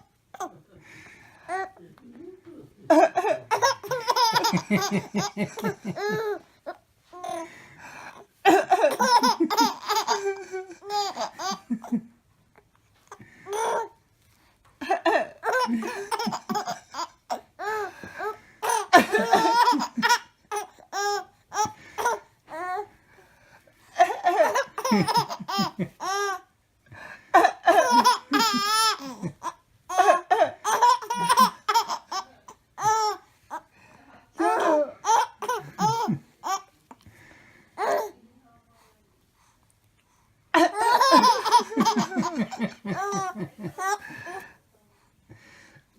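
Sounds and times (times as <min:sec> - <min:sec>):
baby laughing: 0:02.9 - 0:06.4, 0:08.5 - 0:12.0, 0:14.9 - 0:22.8, 0:24.0 - 0:26.4, 0:27.4 - 0:33.2, 0:34.4 - 0:36.7, 0:40.6 - 0:44.4.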